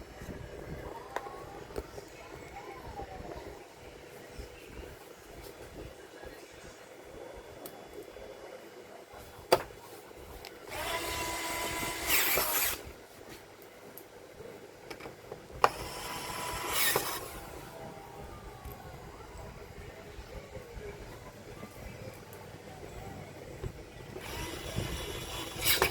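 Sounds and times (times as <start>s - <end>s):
electric screwdriver running: 10.7s - 12.9s, 15.6s - 17.6s, 24.2s - 25.9s.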